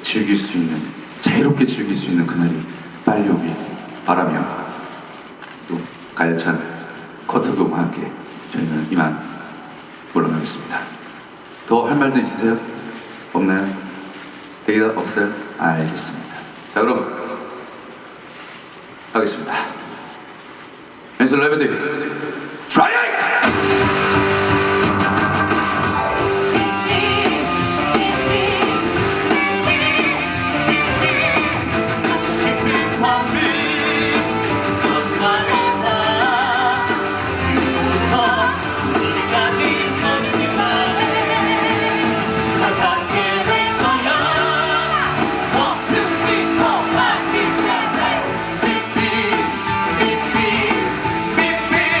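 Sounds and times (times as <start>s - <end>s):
amplified rock band: 23.4s - 52.0s
person singing rock song: 23.4s - 52.0s.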